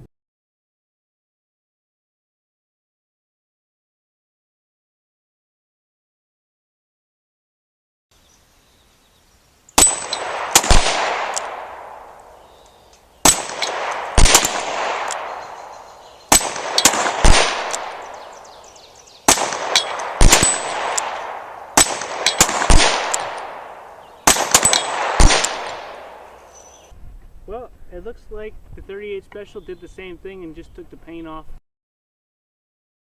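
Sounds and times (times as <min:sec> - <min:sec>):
steel target ringing: 0:09.8 - 0:11.9, 0:19.3 - 0:26.3
handgun shots: 0:09.8 - 0:12.4, 0:13.2 - 0:18.4, 0:19.3 - 0:26.4.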